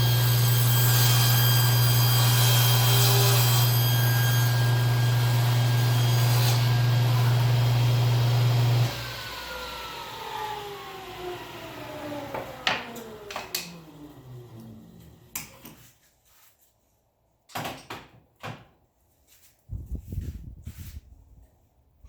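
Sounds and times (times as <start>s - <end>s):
power tool motor spinning down: 7.0s - 15.3s.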